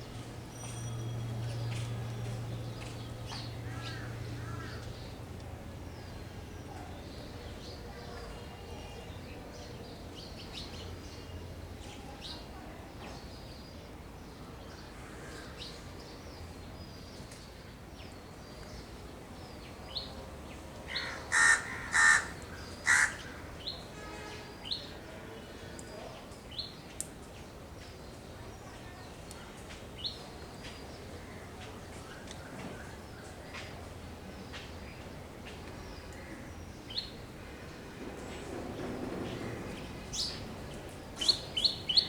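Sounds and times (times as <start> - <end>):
harsh bird calls: 20.9 - 23.7
small birds chirping: 31.9 - 42.0.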